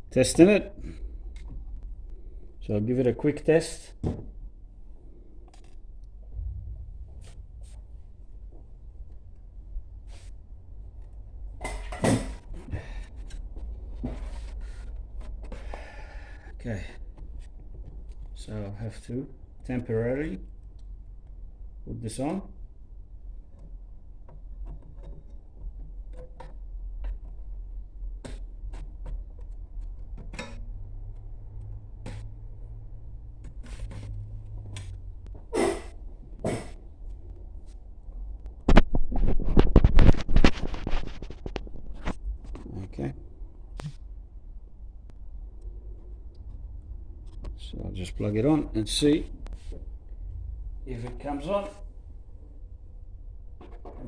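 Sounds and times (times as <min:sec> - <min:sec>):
low steady hum: 0:05.9 - 0:11.4
stereo being handled: 0:38.6 - 0:42.3.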